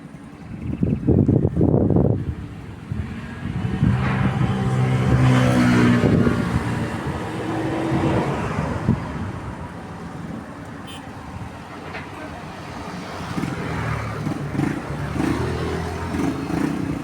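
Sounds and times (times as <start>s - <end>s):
vehicle passing by: 2.0s - 10.4s, 12.2s - 17.0s.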